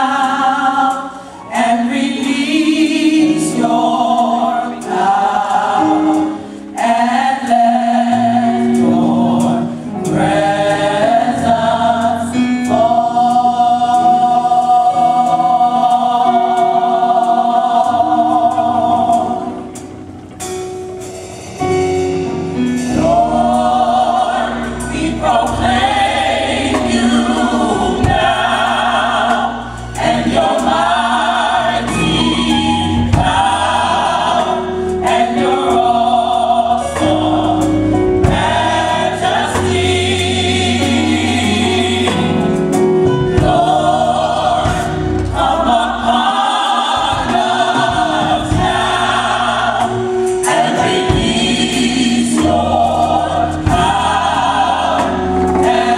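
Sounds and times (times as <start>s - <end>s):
choir singing gospel song: 0.0s - 55.9s
instrumental backing: 0.0s - 55.9s.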